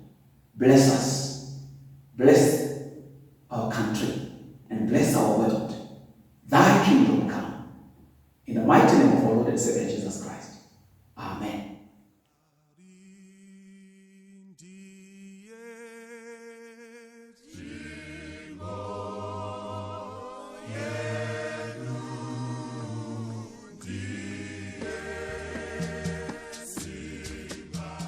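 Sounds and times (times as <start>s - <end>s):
choir singing: 0.6s - 7.8s, 17.4s - 28.0s.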